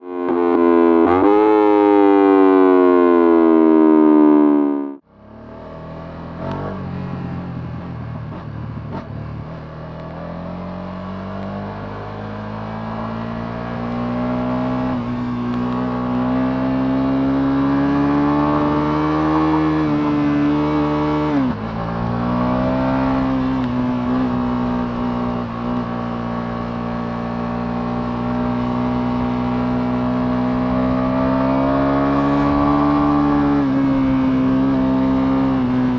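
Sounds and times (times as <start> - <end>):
loud falling tone: 0.0 - 5.0
motorcycle engine revving: 0.0 - 35.9.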